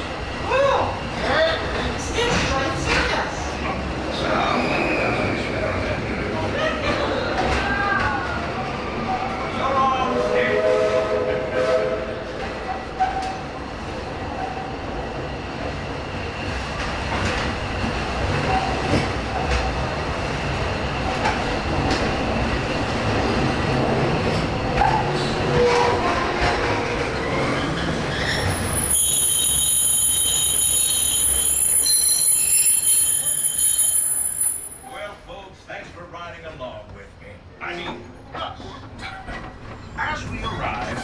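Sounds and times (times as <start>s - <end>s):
steam train rumbling on track: 0.0s - 36.1s
high wheel squeal: 27.2s - 35.0s.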